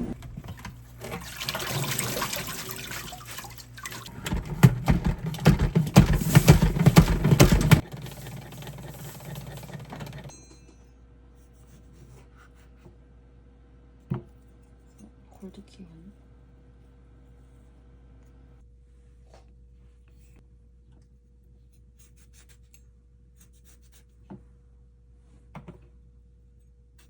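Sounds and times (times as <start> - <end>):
water running and splashing: 0.3 - 9.9.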